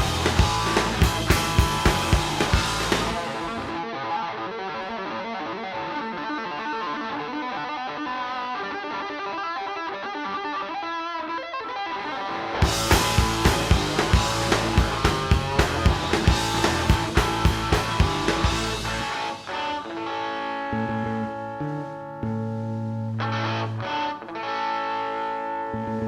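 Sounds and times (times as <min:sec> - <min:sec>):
rockabilly band playing: 0:00.0 - 0:06.6, 0:12.1 - 0:22.3
electric guitar run: 0:00.0 - 0:08.8, 0:11.7 - 0:22.0.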